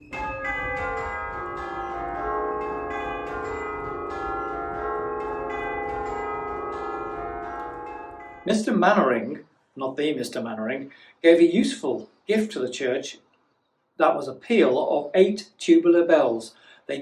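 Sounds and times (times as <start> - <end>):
tubular church bells ringing: 0.0 - 9.4.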